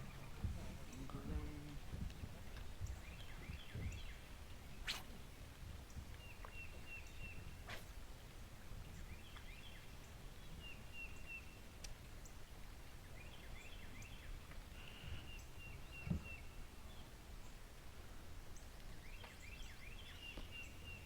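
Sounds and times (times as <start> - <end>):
dull low thump: 0.0 - 4.1, 16.0 - 16.4.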